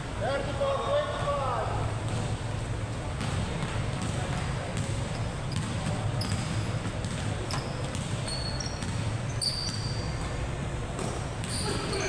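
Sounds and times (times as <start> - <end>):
basketball bouncing on floor: 3.2 - 10.3
sneaker squeaks: 4.0 - 12.0.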